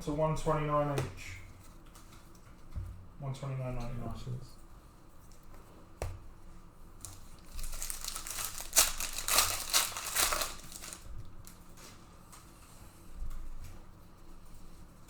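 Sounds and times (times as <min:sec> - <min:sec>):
plastic wrapper crinkling and tearing: 0:07.0 - 0:11.6.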